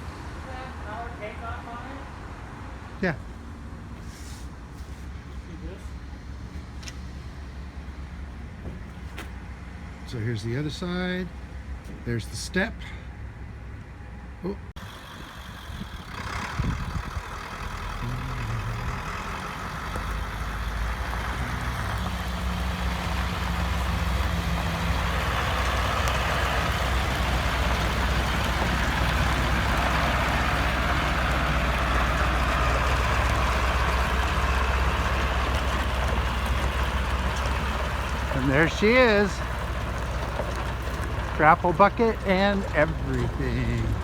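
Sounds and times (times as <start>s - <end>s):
truck engine running: 3.3s - 44.0s.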